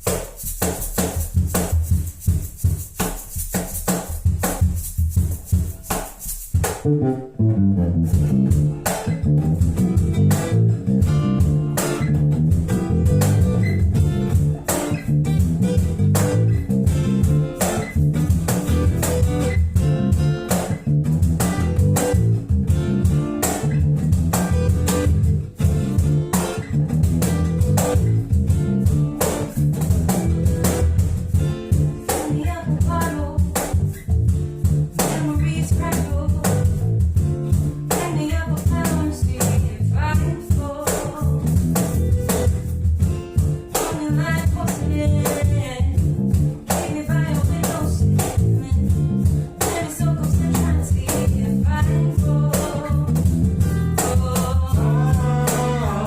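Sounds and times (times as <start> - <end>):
acoustic guitars strummed: 4.1 - 56.0
person singing: 32.2 - 33.6, 37.9 - 41.4, 49.6 - 53.2, 54.0 - 56.0.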